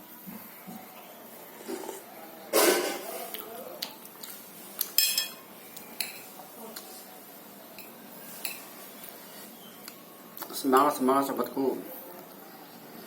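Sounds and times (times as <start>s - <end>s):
spoon clinking against a plate: 4.9s - 5.4s, 6.0s - 6.3s, 7.8s - 8.7s.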